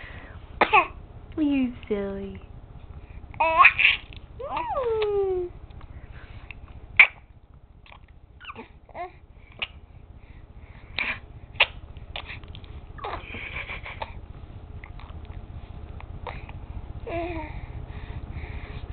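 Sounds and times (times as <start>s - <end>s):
baby babbling: 3.4s - 5.5s, 17.1s - 17.6s.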